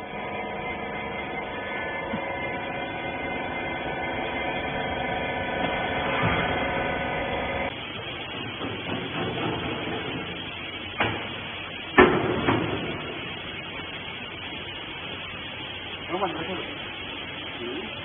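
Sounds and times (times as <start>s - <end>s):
hydraulic pump motor humming: 0.0s - 13.8s.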